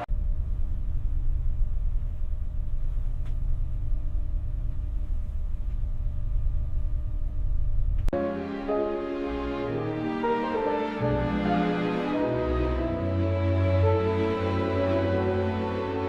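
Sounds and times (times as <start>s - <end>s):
deep low rumble: 0.0s - 8.1s
music: 8.1s - 16.0s.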